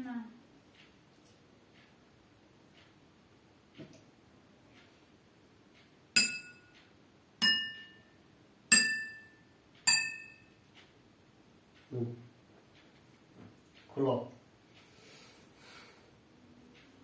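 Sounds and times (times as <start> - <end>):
water glasses tapped ringing: 6.2 - 6.7, 7.4 - 8.1, 8.7 - 10.5.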